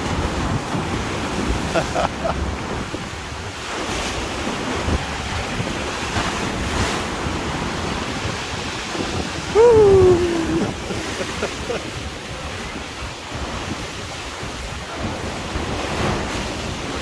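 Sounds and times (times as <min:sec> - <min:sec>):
sea surf breaking: 0:00.0 - 0:17.0
wind buffeting microphone: 0:00.0 - 0:17.0
loud falling call: 0:09.6 - 0:10.8.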